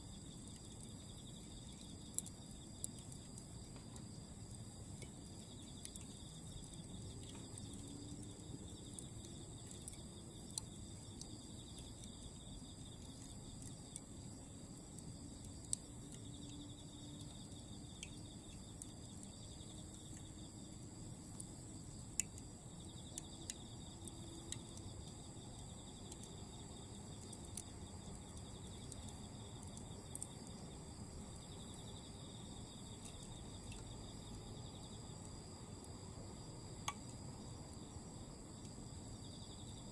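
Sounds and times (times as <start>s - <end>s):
insects trilling: 0.0s - 39.9s
charcoal crackling and popping: 0.1s - 30.7s.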